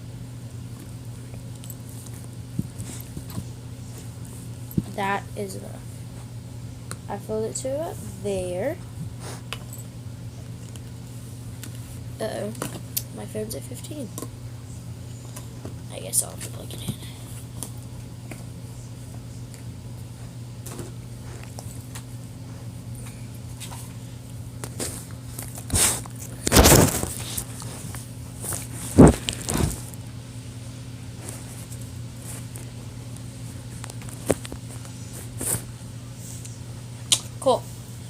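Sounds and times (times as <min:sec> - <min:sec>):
steady low hum: 0:00.0 - 0:38.0.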